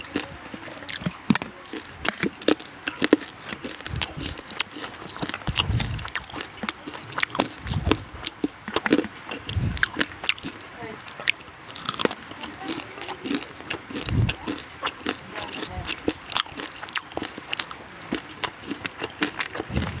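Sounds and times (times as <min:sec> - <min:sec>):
person chewing and crunching food: 0:00.0 - 0:20.0
low muffled thuds: 0:05.5 - 0:06.1.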